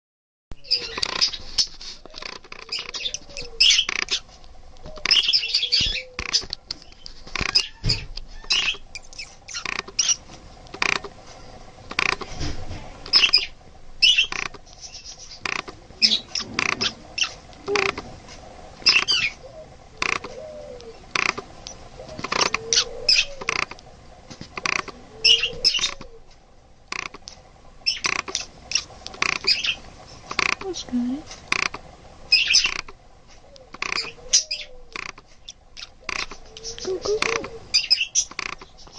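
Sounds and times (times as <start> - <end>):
budgerigar chirping: 0.6 - 4.3, 4.9 - 10.2, 13.1 - 18.0, 18.8 - 19.4, 21.2 - 23.8, 24.6 - 26.0, 27.8 - 29.8, 32.3 - 32.9, 33.8 - 34.8, 35.4 - 38.9.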